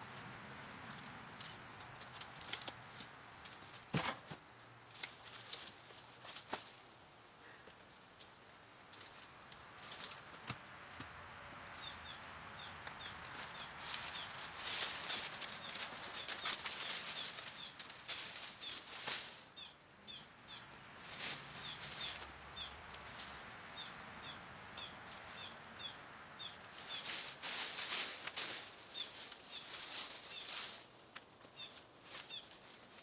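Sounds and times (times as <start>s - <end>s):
leaves and brush rustling: 0.0s - 33.0s.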